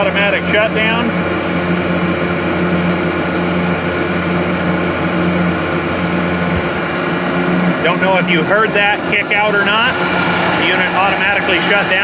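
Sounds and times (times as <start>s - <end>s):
air compressor humming: 0.0s - 12.0s.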